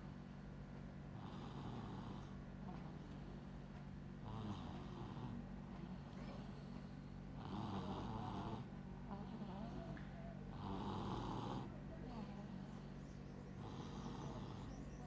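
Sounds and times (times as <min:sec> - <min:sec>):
quiet breathing: 0:01.1 - 0:15.0
noisy snores: 0:01.2 - 0:02.3, 0:04.2 - 0:05.4, 0:07.4 - 0:08.7, 0:10.5 - 0:11.7, 0:13.6 - 0:14.8.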